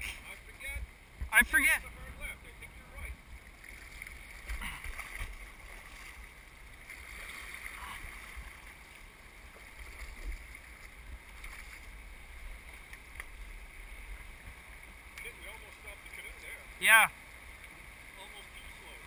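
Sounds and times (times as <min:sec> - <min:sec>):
river water rushing: 0:03.2 - 0:19.0.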